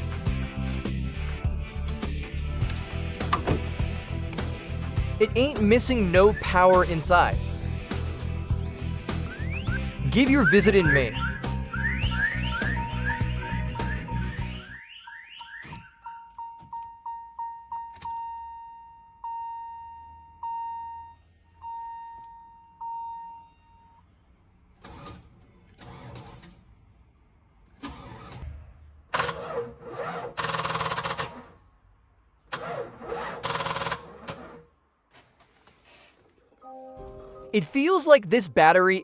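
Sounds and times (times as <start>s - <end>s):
car engine cranking: 0.7s - 5.9s, 24.7s - 26.9s, 27.6s - 31.7s, 32.4s - 34.8s
car warning chime beeping: 5.4s - 7.4s, 9.3s - 24.0s.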